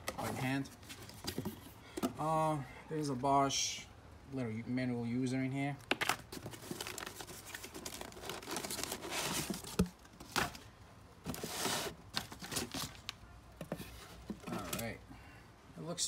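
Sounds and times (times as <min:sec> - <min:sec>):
packaging crinkling and rustling: 0:05.8 - 0:14.9.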